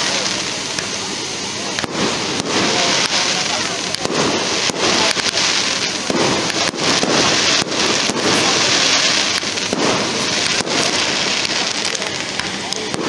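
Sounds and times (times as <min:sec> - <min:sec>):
fireworks bangs: 0:00.0 - 0:13.0
fireworks crackling: 0:00.0 - 0:13.0.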